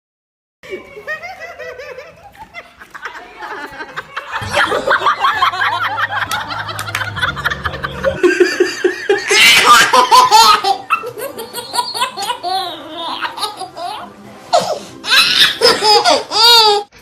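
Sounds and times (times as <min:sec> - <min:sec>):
people laughing hard: 0:00.7 - 0:14.1.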